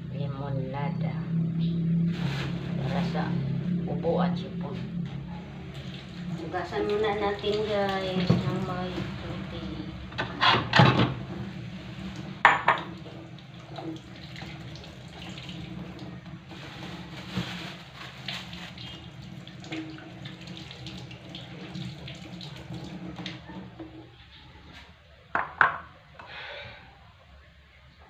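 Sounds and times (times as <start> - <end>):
tap water running into sink: 12.0 - 16.6, 18.2 - 24.0.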